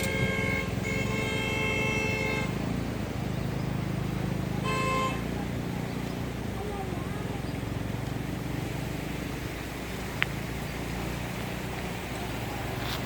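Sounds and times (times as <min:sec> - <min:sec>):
vehicle horn honking: 0:00.0 - 0:02.8, 0:04.6 - 0:05.5
vehicle rumbling on road: 0:00.0 - 0:13.0.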